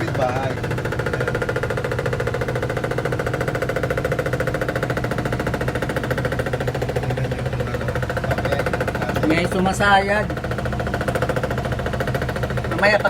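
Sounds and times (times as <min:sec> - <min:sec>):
rapid knocking rattle: 0:00.0 - 0:13.0
washing machine motor hum: 0:00.0 - 0:13.0.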